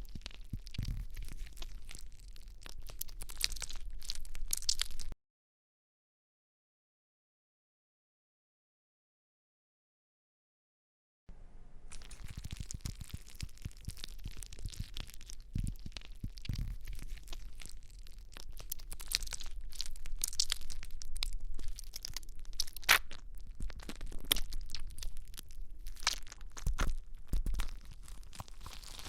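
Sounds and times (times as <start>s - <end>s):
slime sticky clicks and crackles: 0.0s - 5.2s, 11.9s - 29.0s.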